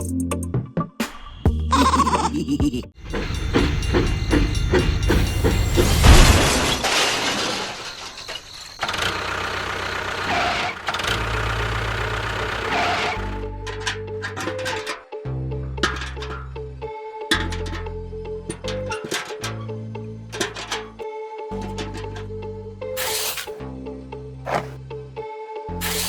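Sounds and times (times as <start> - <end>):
music: 0.0 - 6.3, 13.2 - 26.0
engine chugging: 3.0 - 6.8, 8.4 - 15.0, 15.8 - 16.6, 17.3 - 21.0
loud crash-like burst: 5.8 - 8.2.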